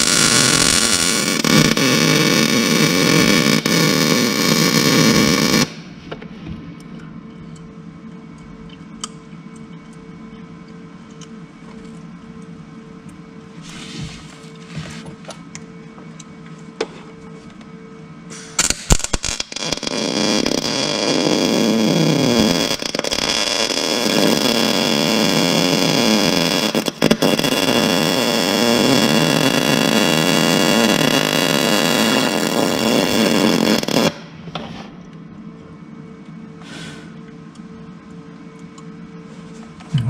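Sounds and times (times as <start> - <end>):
arc welding crackling: 0.0 - 5.9, 18.4 - 34.3.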